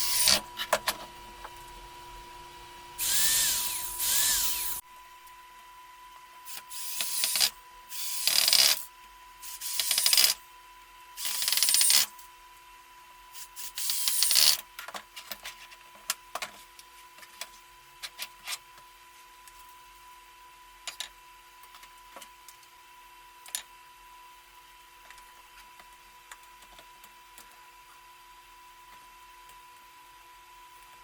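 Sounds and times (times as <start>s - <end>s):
electric hand drill running: 0.0s - 0.4s, 3.0s - 4.8s, 6.5s - 8.9s, 9.5s - 10.4s, 11.2s - 12.1s, 13.4s - 14.6s.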